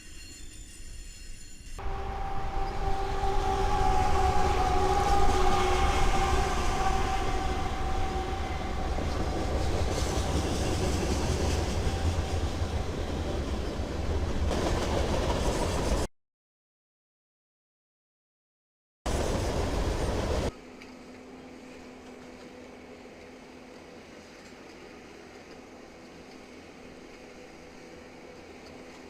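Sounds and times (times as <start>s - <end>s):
train wheels rumbling on rails: 0.0s - 16.1s, 19.1s - 29.0s
train horn: 1.8s - 12.6s.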